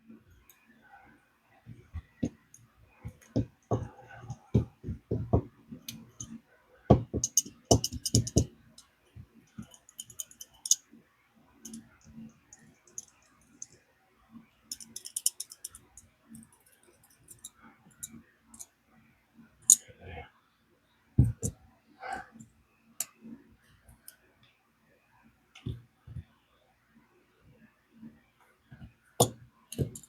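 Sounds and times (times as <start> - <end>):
dull handling thumps: 3.0 - 5.9, 6.9 - 8.5.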